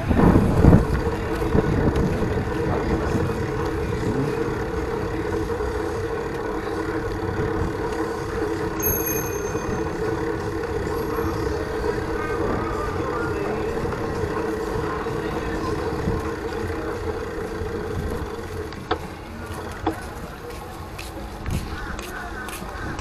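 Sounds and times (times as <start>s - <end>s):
low hum: 0.0s - 20.4s
bicycle riding wind noise: 0.0s - 23.0s
faint high thin tone: 8.8s - 9.9s.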